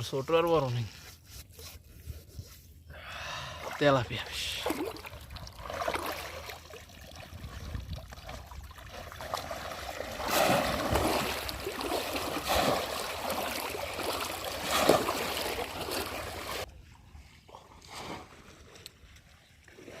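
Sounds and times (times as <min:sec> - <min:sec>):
shallow water splashing: 0:03.6 - 0:16.7.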